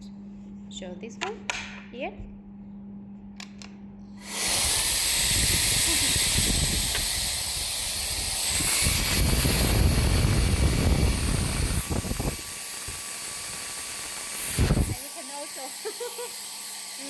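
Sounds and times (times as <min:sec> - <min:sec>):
blower motor running: 0:04.0 - 0:17.0.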